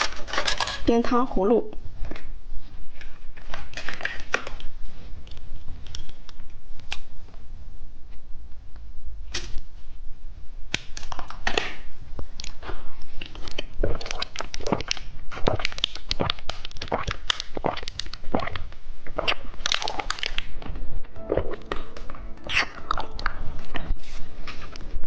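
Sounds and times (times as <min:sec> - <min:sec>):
crunching candy: 0:13.2 - 0:20.6.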